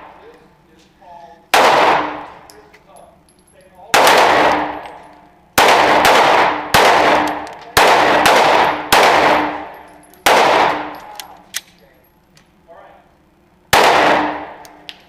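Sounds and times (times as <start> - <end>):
pistol shots with echo: 1.5 - 2.5, 3.9 - 11.4, 13.7 - 14.9.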